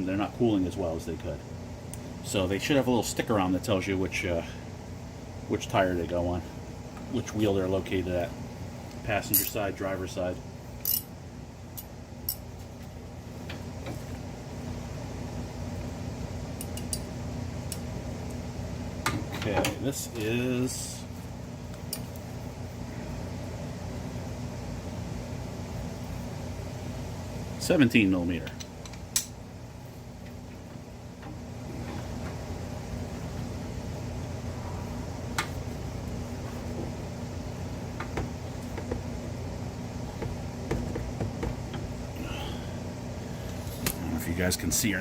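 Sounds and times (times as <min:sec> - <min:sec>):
steady low hum: 0:00.0 - 0:45.0
metal tools clinking: 0:09.3 - 0:09.6.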